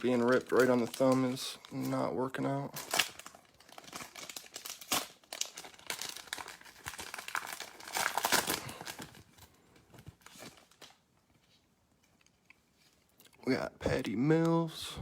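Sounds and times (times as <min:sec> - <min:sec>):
foil wrapper crinkling: 0:00.0 - 0:13.0.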